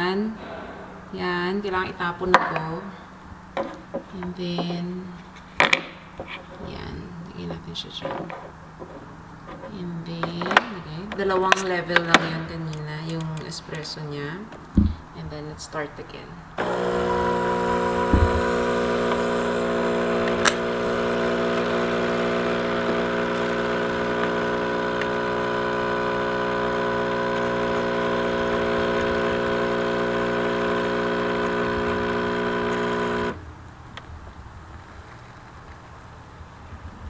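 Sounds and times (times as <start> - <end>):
coffee machine pump humming: 16.6 - 33.4.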